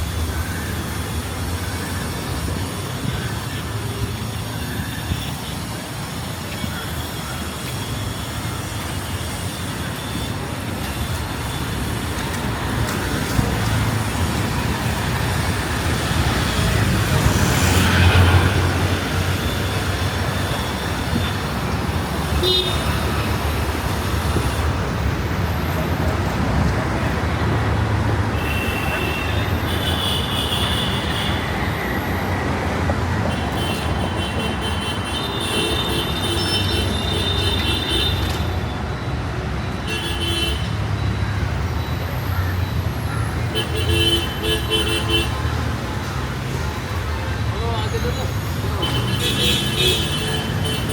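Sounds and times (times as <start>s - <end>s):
road traffic rumble: 0.0s - 50.9s
car horns tooting: 8.2s - 24.8s, 28.2s - 38.7s, 43.4s - 45.6s.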